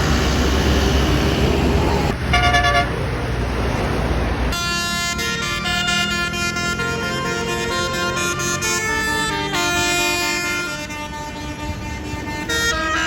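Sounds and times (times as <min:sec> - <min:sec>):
bus engine rumbling: 0:00.0 - 0:13.0
air horn playing a tune: 0:02.3 - 0:03.0, 0:04.5 - 0:13.0.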